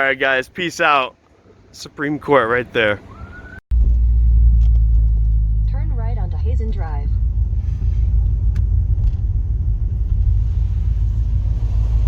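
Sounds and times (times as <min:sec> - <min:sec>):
low rumble: 0:03.7 - 0:12.0.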